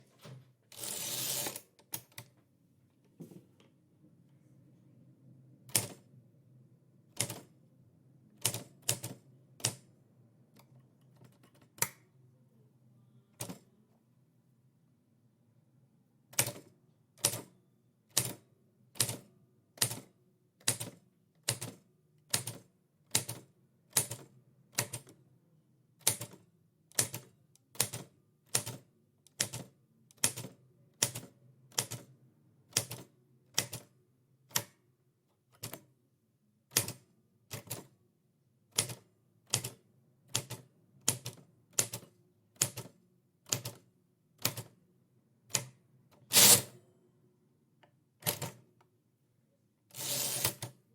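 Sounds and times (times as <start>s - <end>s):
typewriter keys clacking: 46.4s - 46.7s.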